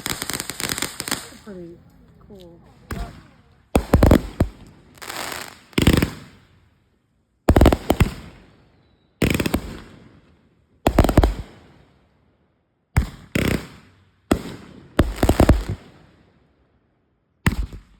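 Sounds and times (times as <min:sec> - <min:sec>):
fireworks bangs: 0:00.0 - 0:06.7, 0:07.5 - 0:08.6, 0:09.2 - 0:10.2, 0:13.0 - 0:15.9
fireworks crackle: 0:00.0 - 0:06.7, 0:07.5 - 0:08.5, 0:09.2 - 0:10.2, 0:13.0 - 0:16.0.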